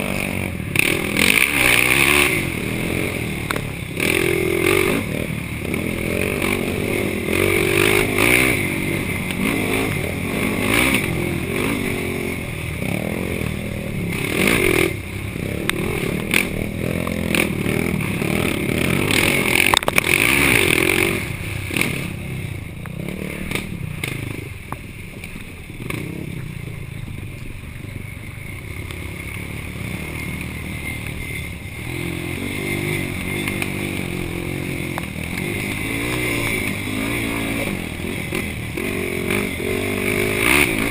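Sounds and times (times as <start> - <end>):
quad engine revving: 0.0 - 24.5, 25.8 - 26.5, 28.9 - 40.9.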